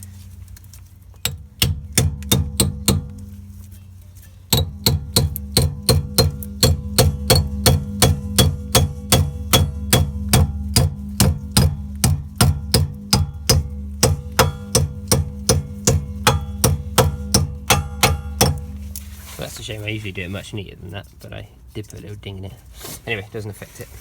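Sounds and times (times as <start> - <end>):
hammer striking metal: 1.2 - 3.8, 4.5 - 19.4.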